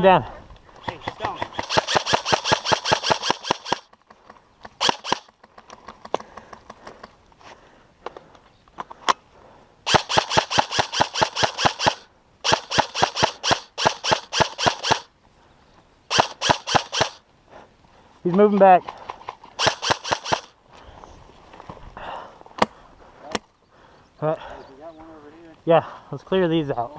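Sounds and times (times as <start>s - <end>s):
airsoft guns firing: 0.8s - 3.9s, 4.7s - 5.3s, 9.9s - 15.1s, 16.1s - 17.2s, 19.6s - 20.6s.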